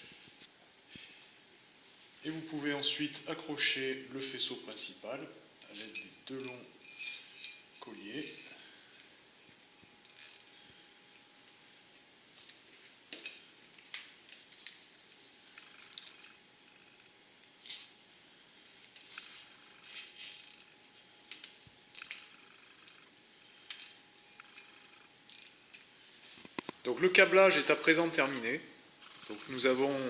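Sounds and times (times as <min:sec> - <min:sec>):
cable ties ratcheting tight: 0:21.9 - 0:23.0.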